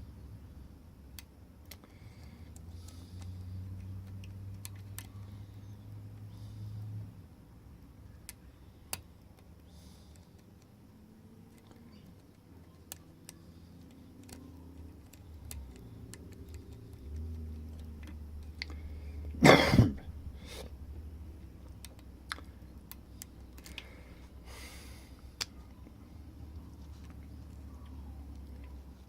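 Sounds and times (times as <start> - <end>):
person clearing throat: 19.4 - 20.1.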